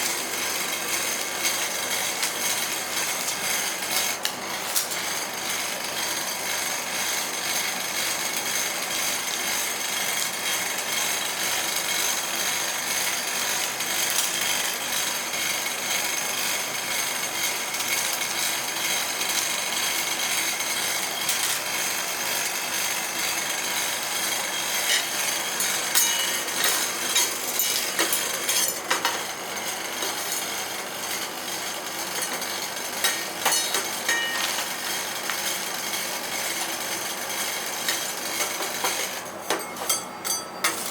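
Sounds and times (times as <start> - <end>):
metal spatulas scraping steel plate: 24.8 - 29.3, 33.0 - 34.7, 37.9 - 40.9
blades clicking on metal plate: 24.8 - 30.5, 32.2 - 34.9.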